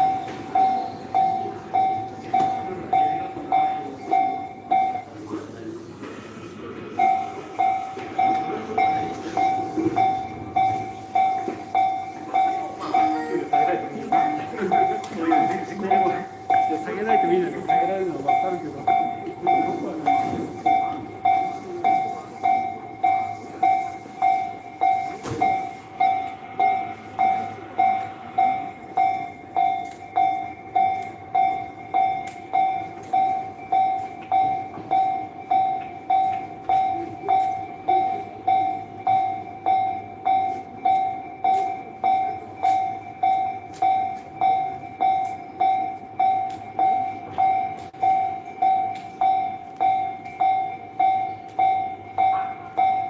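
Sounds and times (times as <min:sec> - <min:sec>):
railroad crossing bell ringing: 0:00.0 - 0:53.0.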